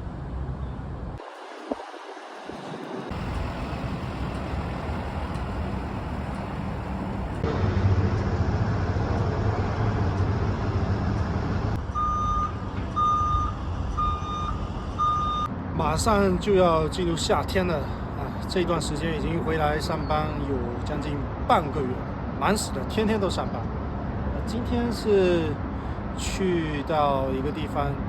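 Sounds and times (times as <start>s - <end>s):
traffic noise: 0.0s - 28.0s
large vehicle engine: 0.1s - 15.7s
backup alarm beeping: 11.9s - 15.5s.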